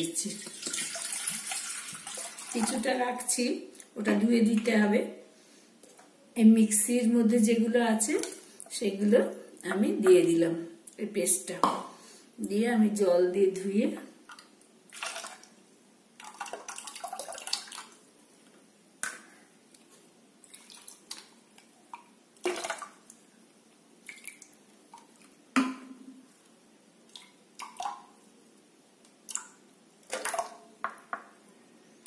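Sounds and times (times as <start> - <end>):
water pouring into pot: 0.3 - 2.9, 16.2 - 18.0
water dripping: 0.3 - 3.0, 16.2 - 18.3, 20.4 - 23.3, 24.0 - 28.3, 29.0 - 31.2.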